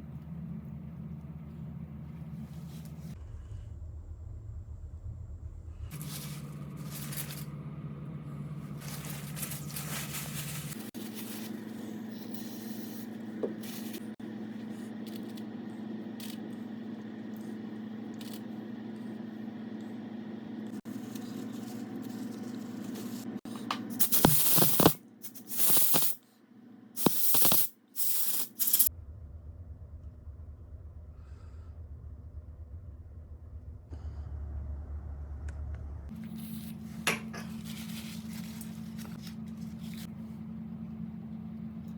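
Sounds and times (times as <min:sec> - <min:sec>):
steady low hum: 0:00.0 - 0:41.9
aerosol spray can hissing: 0:24.0 - 0:26.2, 0:27.0 - 0:28.9.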